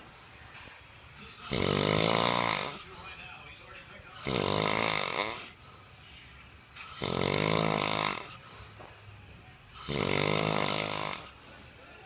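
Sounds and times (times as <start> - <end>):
man snoring: 1.5 - 2.8, 4.2 - 5.6, 6.9 - 8.4, 9.8 - 11.4.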